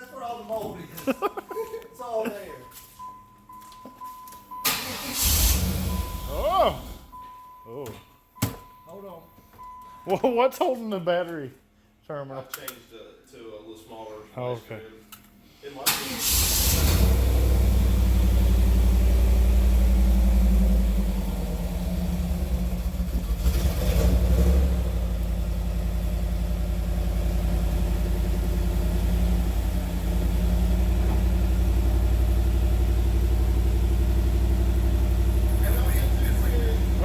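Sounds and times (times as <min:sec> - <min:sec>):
car engine idling: 0:15.9 - 0:37.0.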